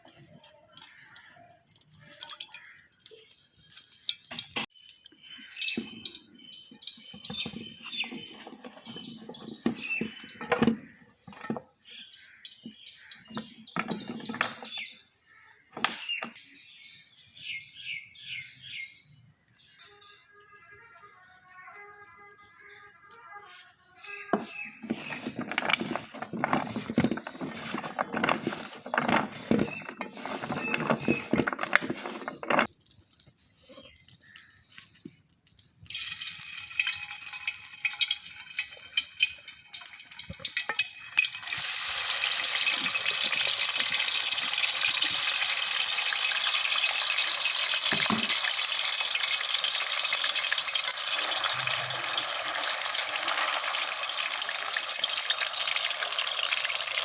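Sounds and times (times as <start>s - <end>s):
clattering and handling knocks: 7.0s - 11.8s, 13.5s - 14.9s, 24.3s - 32.7s.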